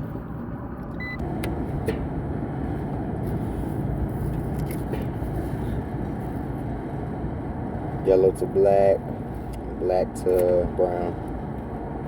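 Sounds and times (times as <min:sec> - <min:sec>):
steady low rumble: 0:00.0 - 0:12.0
short electronic beep: 0:01.0 - 0:01.2.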